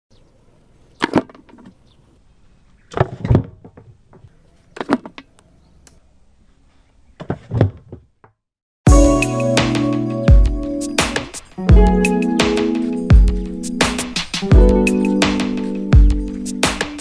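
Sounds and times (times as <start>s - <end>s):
music: 8.9s - 17.0s.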